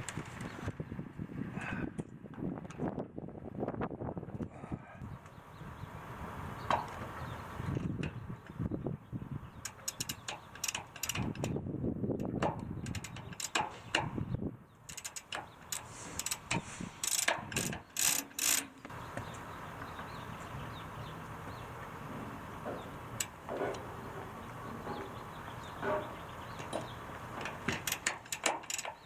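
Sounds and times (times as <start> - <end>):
tools clicking on metal hardware: 9.6 - 11.6, 12.2 - 14.1, 14.9 - 18.9, 25.8 - 29.0
steady background hum: 9.6 - 29.0.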